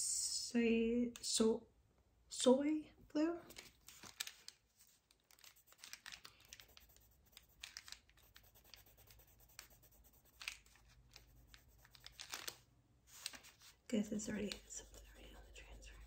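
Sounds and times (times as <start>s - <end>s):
pencil scratching on paper: 5.4s - 12.5s, 14.2s - 16.0s.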